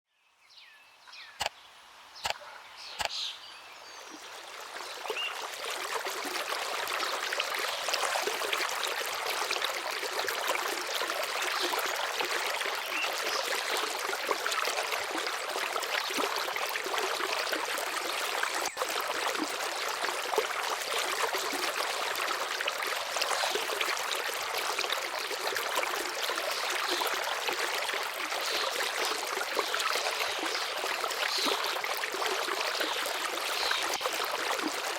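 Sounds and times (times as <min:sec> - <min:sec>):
sharp clicks: 0:01.4 - 0:01.6, 0:03.0 - 0:03.2.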